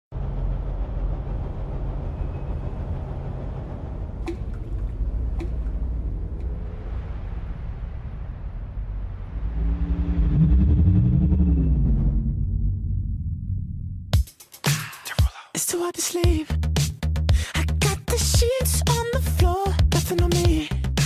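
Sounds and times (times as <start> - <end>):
road noise: 0.1 - 12.5
vehicle engine hum: 0.1 - 14.1.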